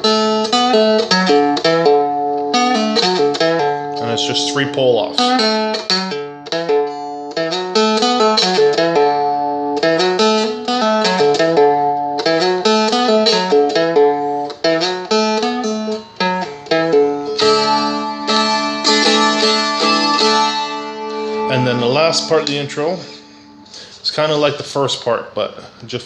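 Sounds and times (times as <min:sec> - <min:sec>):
strummed chords: 0:00.0 - 0:24.9
picked string instrument notes: 0:00.0 - 0:26.0.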